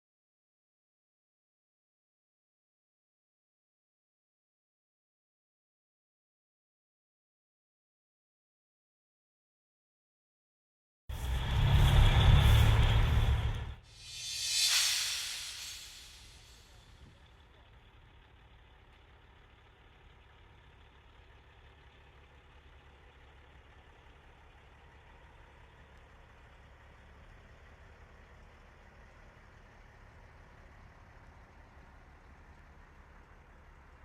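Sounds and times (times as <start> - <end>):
diesel truck engines rumbling: 11.1 - 13.8, 17.2 - 34.0.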